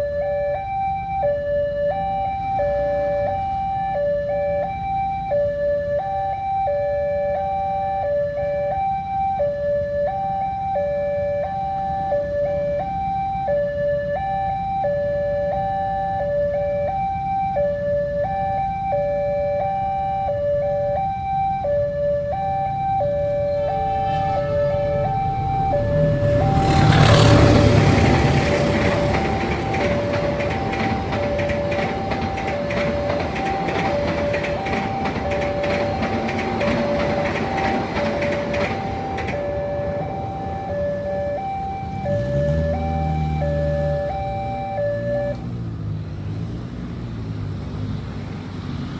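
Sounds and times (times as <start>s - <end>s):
two-tone level crossing alarm: 0.0s - 45.5s
passing train rumble and clatter: 19.6s - 48.9s.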